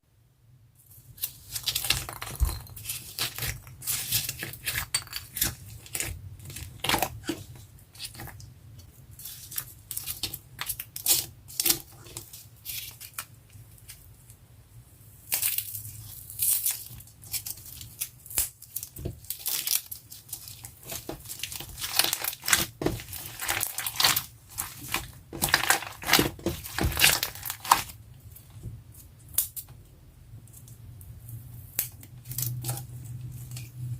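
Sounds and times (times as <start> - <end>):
slime crunching and popping: 16.4 - 28.0.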